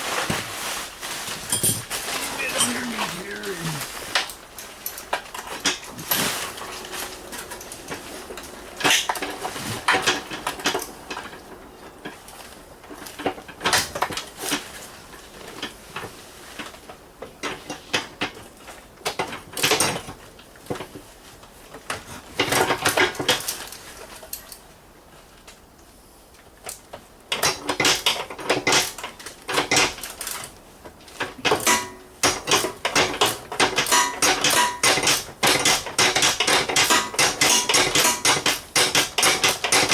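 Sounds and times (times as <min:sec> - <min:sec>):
hand tools clicking on metal: 0:31.4 - 0:39.9.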